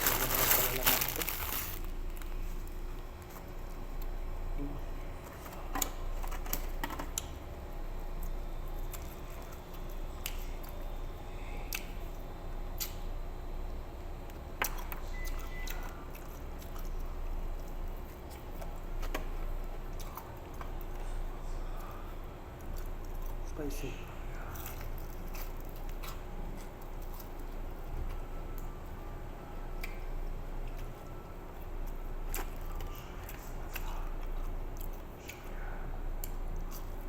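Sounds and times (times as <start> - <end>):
steady low hum: 0.0 - 37.0
person chewing food: 14.6 - 23.4, 24.1 - 28.7, 29.7 - 37.0.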